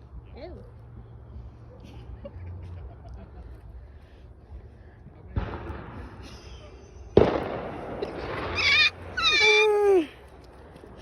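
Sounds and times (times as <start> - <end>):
firework bangs: 5.3 - 9.5.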